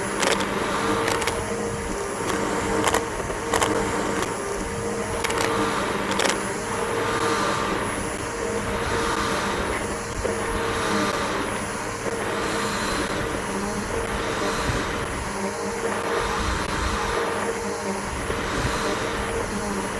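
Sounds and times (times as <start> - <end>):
sharp clicks: 0.0 - 6.5
vacuum cleaner motor whine: 0.0 - 19.9.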